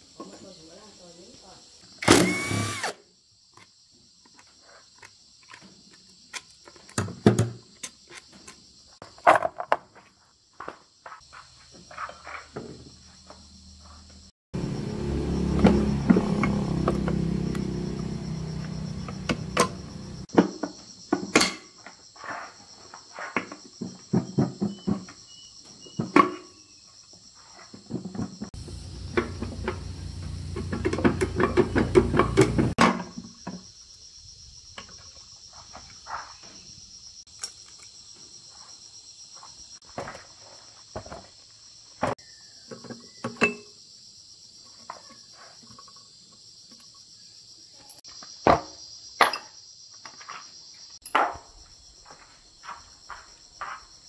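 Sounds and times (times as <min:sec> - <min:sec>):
crickets chirping: 0:00.0 - 0:54.0
low machine hum: 0:28.6 - 0:31.8.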